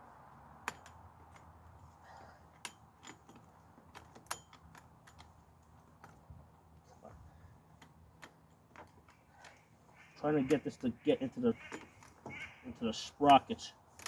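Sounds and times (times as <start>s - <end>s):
saw chain clicking and rattling: 0.6s - 6.8s.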